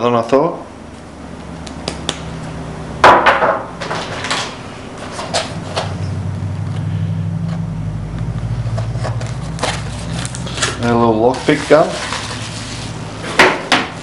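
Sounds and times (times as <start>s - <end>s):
low background hum: 0.0s - 14.0s.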